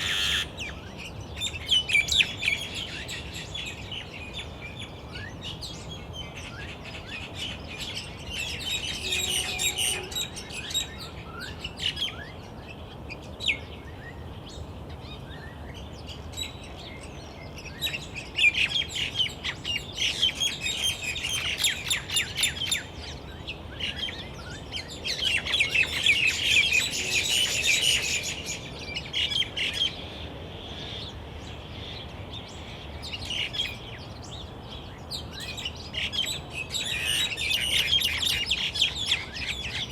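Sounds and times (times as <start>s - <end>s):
small birds chirping: 0.0s - 4.1s.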